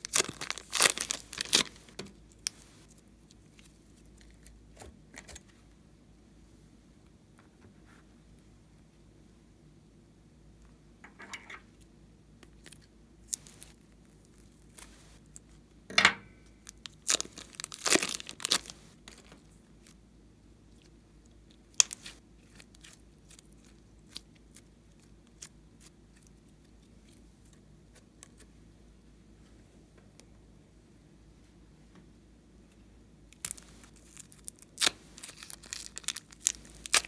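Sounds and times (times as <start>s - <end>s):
thin plastic crinkling: 0.0s - 5.5s, 12.4s - 15.5s, 16.6s - 20.0s, 21.6s - 25.1s, 33.3s - 37.0s.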